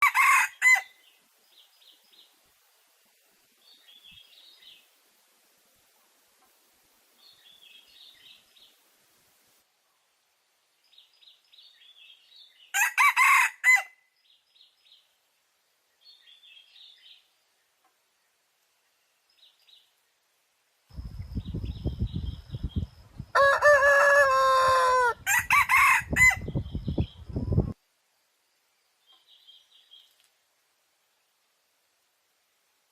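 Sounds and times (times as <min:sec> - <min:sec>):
loud chicken call: 0:00.0 - 0:00.9, 0:12.7 - 0:13.9, 0:23.3 - 0:26.5.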